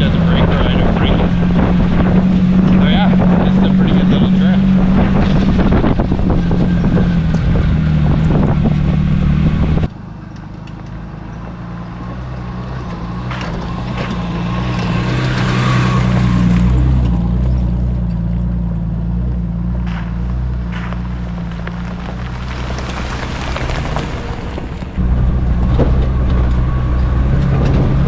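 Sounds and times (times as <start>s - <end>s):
car engine rumbling: 0.0s - 28.0s
knocks from rough track: 12.4s - 28.0s.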